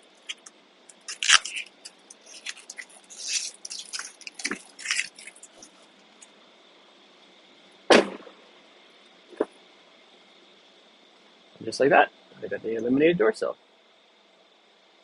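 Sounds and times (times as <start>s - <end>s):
plastic film crinkling: 0.0s - 5.8s.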